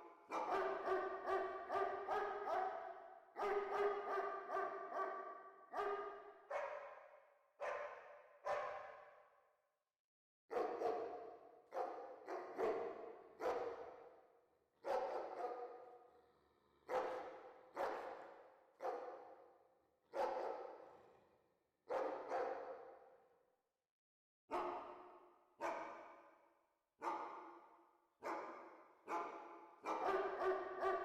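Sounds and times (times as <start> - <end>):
distant dog barking: 0.3 - 7.0, 7.6 - 9.0, 10.5 - 14.0, 14.8 - 16.0, 16.9 - 19.3, 20.1 - 20.9, 21.9 - 23.0, 28.2 - 31.0.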